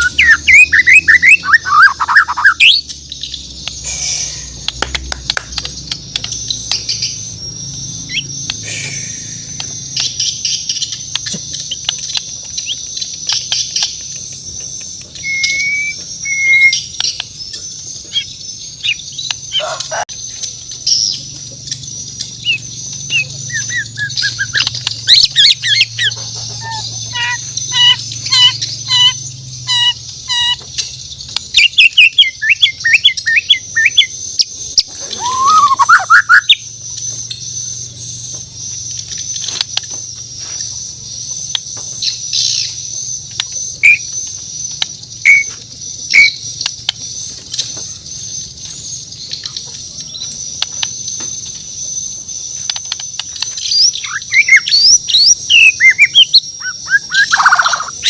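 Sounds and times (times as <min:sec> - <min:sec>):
songbird whistling and trilling: 0:00.0 - 0:20.0, 0:22.0 - 0:38.4, 0:41.5 - 0:58.0
sharp bird clicks: 0:00.0 - 0:37.6, 0:52.5 - 0:58.0.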